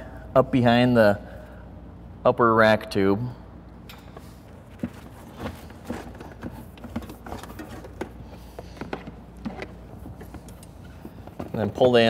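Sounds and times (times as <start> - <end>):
low steady hum: 0.0 - 12.0
wires clicking and rustling: 3.9 - 12.0.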